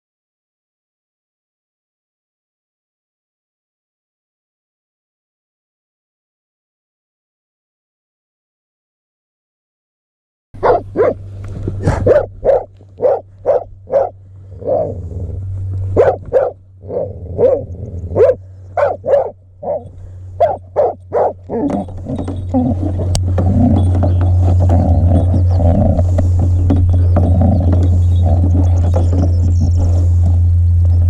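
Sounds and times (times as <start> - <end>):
dog barking: 10.6 - 11.2, 11.8 - 15.0, 16.0 - 21.8
steady low rumble: 10.6 - 31.0.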